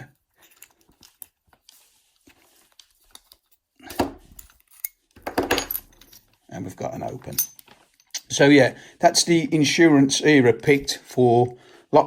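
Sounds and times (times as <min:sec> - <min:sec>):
lock pick clicks and scrapes: 0:03.1 - 0:06.3.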